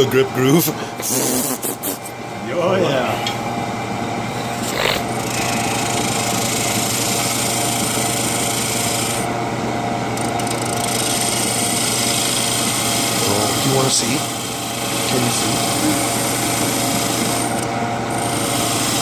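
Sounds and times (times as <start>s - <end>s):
lathe motor hum: 2.1s - 19.0s
lathe tool scraping wood: 4.5s - 9.3s, 10.2s - 19.0s.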